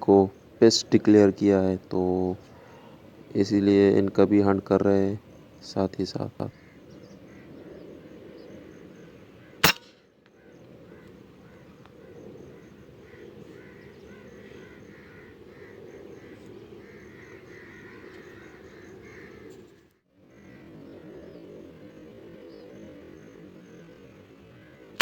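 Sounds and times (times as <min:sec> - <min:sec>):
steady low background noise: 0:00.0 - 0:19.5
crows cawing: 0:02.4 - 0:03.1, 0:06.5 - 0:25.0
airgun shot: 0:09.6 - 0:10.0.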